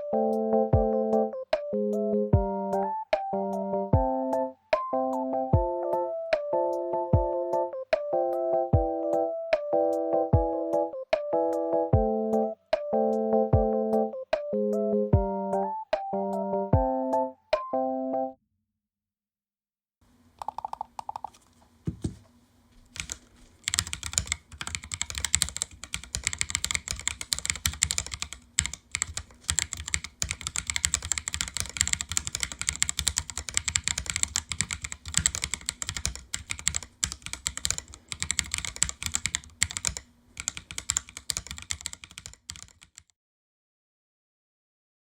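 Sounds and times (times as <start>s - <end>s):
mechanical keyboard typing: 20.4s - 21.3s, 23.0s - 43.1s.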